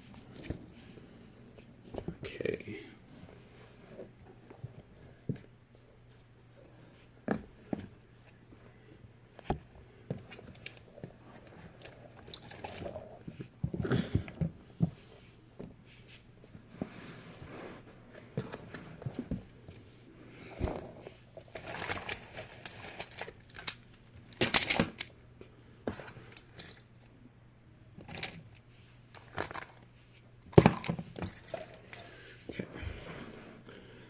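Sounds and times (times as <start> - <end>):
toys rustling and clicking: 20.6 - 25.2, 28.0 - 29.9.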